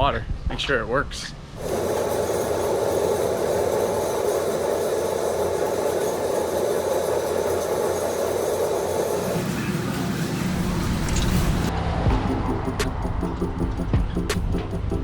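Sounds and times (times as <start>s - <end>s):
vehicle engine drone: 8.8s - 15.0s.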